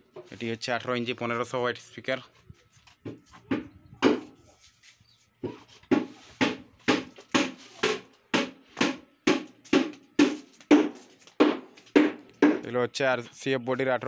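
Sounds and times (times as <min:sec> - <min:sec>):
rhythmic hammering: 0:03.0 - 0:04.4, 0:05.4 - 0:12.8.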